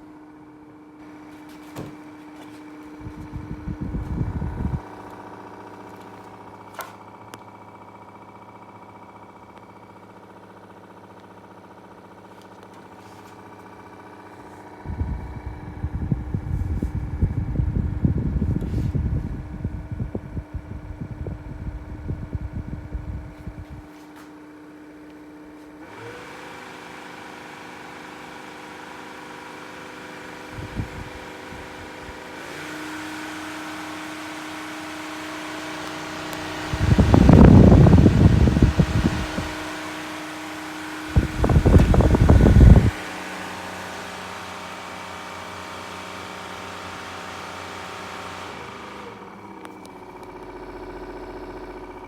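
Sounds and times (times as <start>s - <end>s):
fan motor whine: 0.0s - 52.0s
loud rough low rumble: 2.9s - 6.6s, 13.4s - 23.9s, 36.1s - 39.9s, 40.5s - 43.0s, 48.8s - 52.0s.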